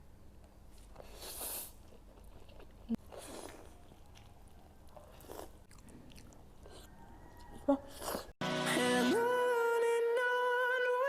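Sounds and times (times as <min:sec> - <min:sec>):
person chewing food: 0:00.4 - 0:08.4.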